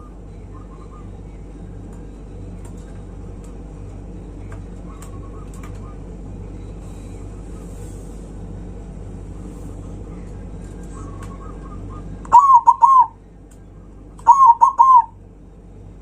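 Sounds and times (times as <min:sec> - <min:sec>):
steady low rumble: 0:00.0 - 0:16.0
dove cooing: 0:10.9 - 0:13.2, 0:14.2 - 0:15.2.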